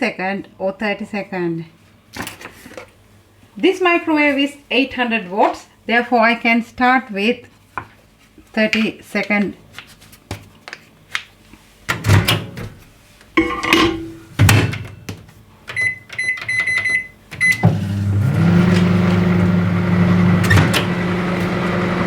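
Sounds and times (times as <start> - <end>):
microwave oven humming: 13.4 - 22.0
short keypad beeps: 15.7 - 17.7.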